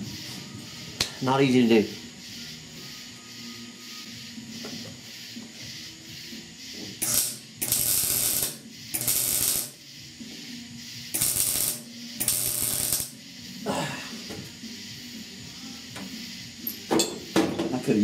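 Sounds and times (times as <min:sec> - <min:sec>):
electric welder crackling: 0:07.0 - 0:09.8, 0:11.1 - 0:13.2.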